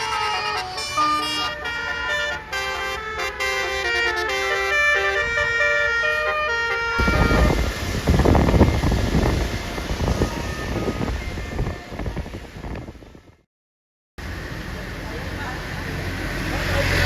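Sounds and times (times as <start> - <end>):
bus horn playing melody: 0.0 - 12.4
loud low rushing noise: 7.0 - 13.4.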